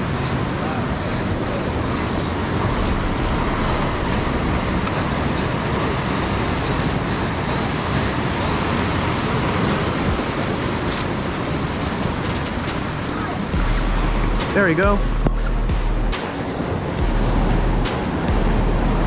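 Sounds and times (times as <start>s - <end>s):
surf breaking on beach: 0.0s - 15.0s.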